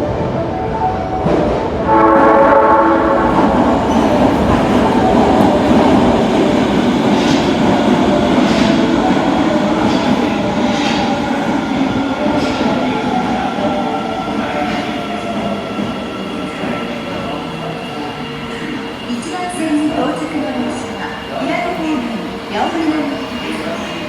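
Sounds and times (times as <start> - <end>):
subway train horn: 0.0 - 7.4
train rumble: 0.0 - 24.0.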